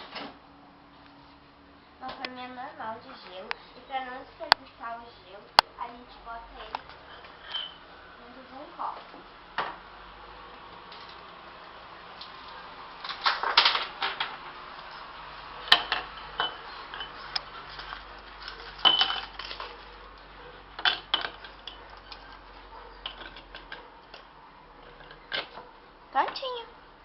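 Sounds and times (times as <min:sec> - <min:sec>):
ice cubes clinking into glass: 0:18.7 - 0:19.6.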